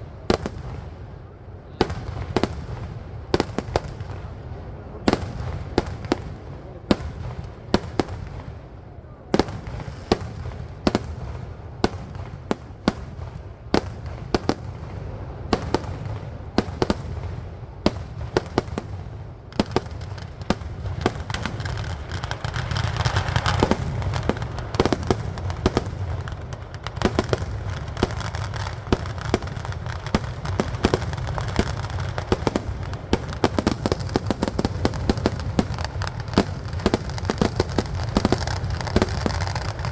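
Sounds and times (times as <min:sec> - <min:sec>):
continuous fireworks crackle: 0:00.0 - 0:39.9
rapid cracks of fireworks: 0:00.0 - 0:39.9
firecracker bangs: 0:09.4 - 0:39.9.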